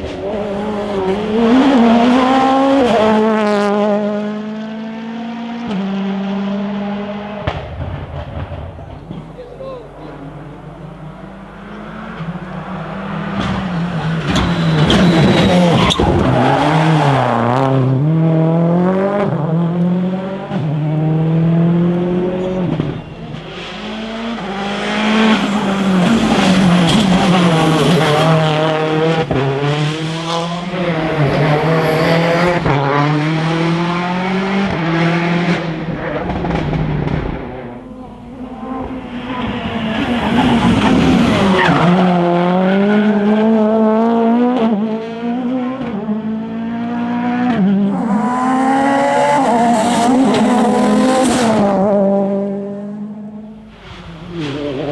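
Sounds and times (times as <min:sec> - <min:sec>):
rally car engines revving: 0:00.0 - 0:54.9
tyre squeal: 0:13.5 - 0:17.2, 0:47.9 - 0:51.6.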